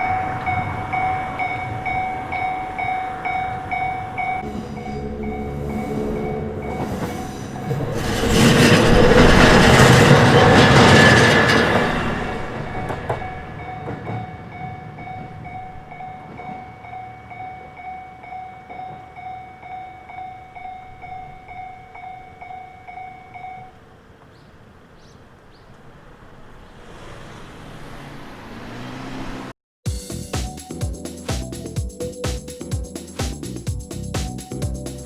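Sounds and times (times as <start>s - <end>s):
level crossing electronic bell: 0.0s - 7.2s, 12.8s - 23.8s
railcar rumble: 0.0s - 28.8s, 30.0s - 35.0s.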